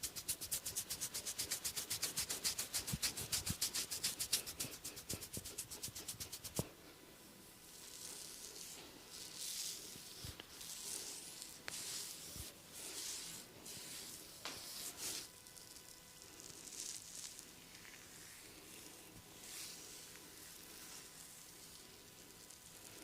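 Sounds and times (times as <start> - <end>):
hands rubbing over skin: 0.0 - 6.7, 8.0 - 15.3, 19.4 - 21.2.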